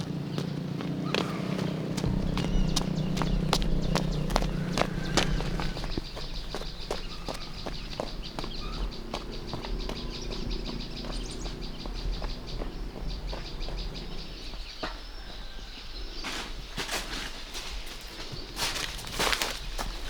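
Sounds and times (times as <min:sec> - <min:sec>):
fast high-pitched chirping: 0:02.0 - 0:14.5.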